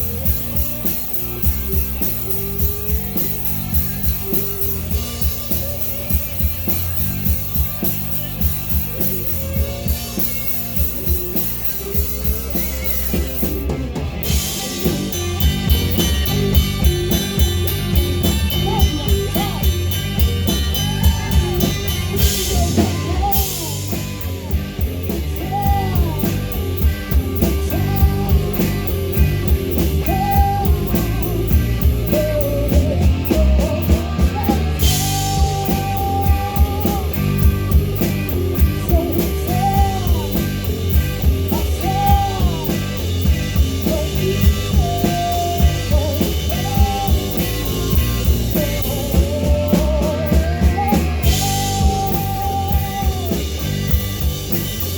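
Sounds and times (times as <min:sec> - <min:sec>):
live rock band playing: 0:00.0 - 0:54.9
person singing: 0:10.9 - 0:54.8.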